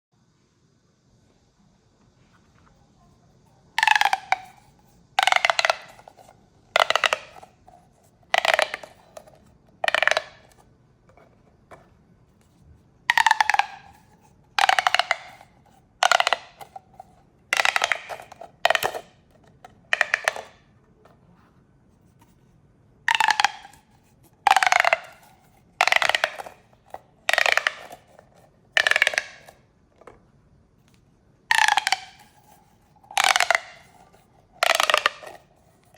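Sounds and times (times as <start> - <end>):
plastic pop tubes clicking: 3.8 - 10.6, 13.1 - 16.9, 17.5 - 20.6, 23.1 - 29.6, 30.9 - 35.9.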